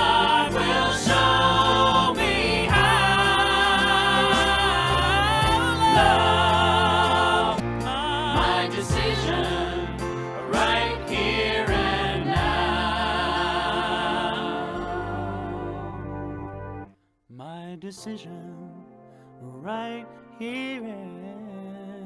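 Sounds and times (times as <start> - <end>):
choir singing gospel song: 0.0 - 16.7
instrumental backing: 0.0 - 16.9.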